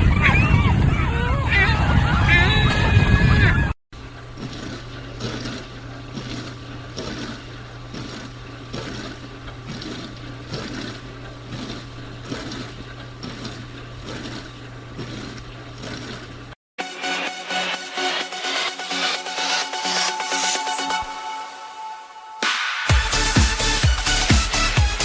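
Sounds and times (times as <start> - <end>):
dishwasher motor hum: 2.8 - 16.6
water spraying and sloshing: 4.0 - 16.6.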